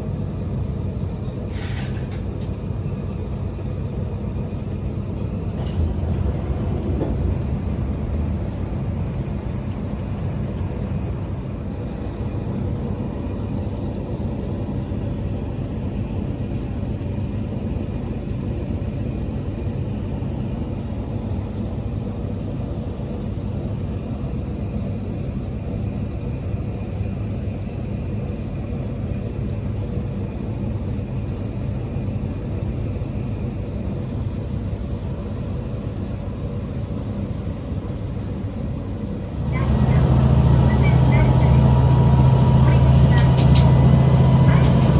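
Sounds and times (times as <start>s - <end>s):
railcar engine rumble: 0.0s - 44.9s
wheels on rail: 1.0s - 14.6s, 38.8s - 44.9s.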